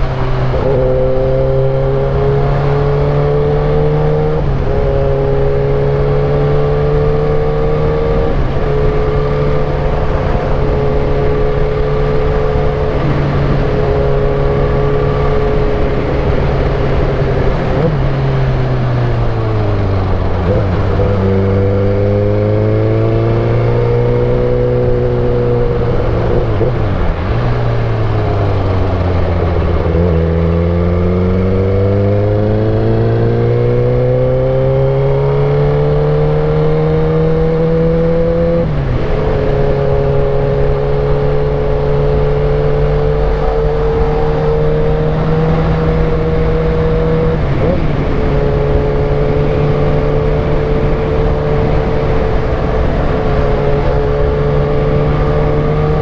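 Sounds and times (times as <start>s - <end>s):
motorcycle engine while riding: 0.0s - 56.0s.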